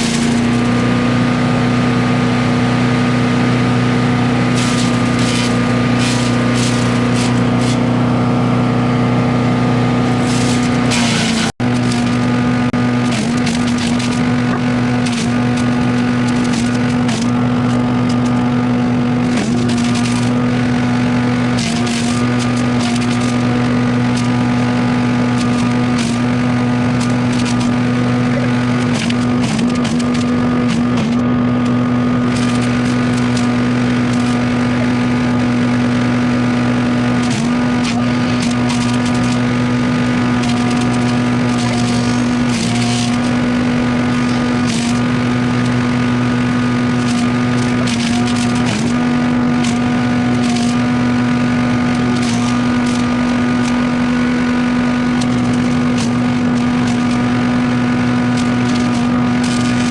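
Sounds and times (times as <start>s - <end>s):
engine running steadily: 0.0s - 59.9s
sharp cracks and clicks: 10.2s - 18.4s, 19.3s - 20.4s, 25.2s - 28.0s, 28.7s - 36.0s, 37.0s - 54.1s, 54.9s - 59.9s.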